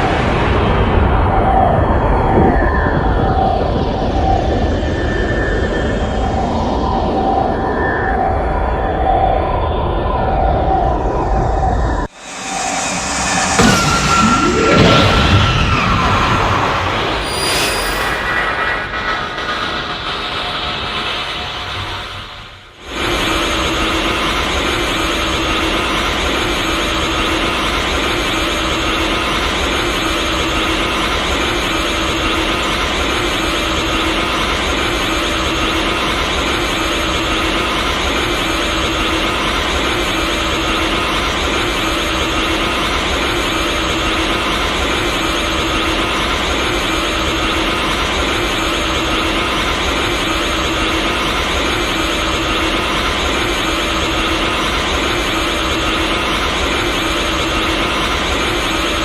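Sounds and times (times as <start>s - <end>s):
dense rushing drone with held tones: 0.0s - 25.0s.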